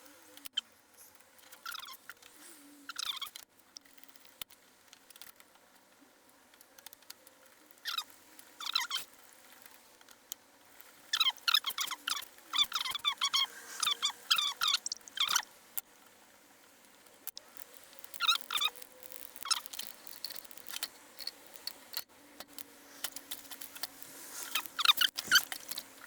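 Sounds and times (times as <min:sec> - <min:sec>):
high-pitched chirping squeaks: 0:01.6 - 0:02.0, 0:02.9 - 0:03.3, 0:07.8 - 0:08.0, 0:08.6 - 0:09.0, 0:11.1 - 0:15.4, 0:17.6 - 0:22.0, 0:23.0 - 0:26.0.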